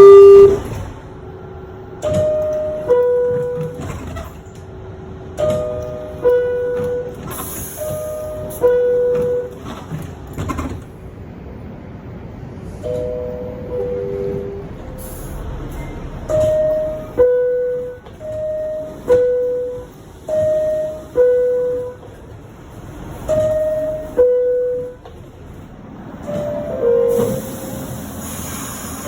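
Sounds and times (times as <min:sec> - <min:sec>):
two-tone door chime: 0:00.0 - 0:00.7, 0:02.0 - 0:04.0, 0:05.4 - 0:09.8, 0:12.8 - 0:15.0, 0:15.8 - 0:22.1, 0:23.3 - 0:25.1.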